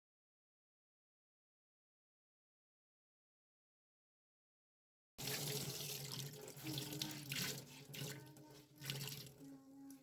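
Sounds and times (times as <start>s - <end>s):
tap water splashing into sink: 5.2s - 10.0s.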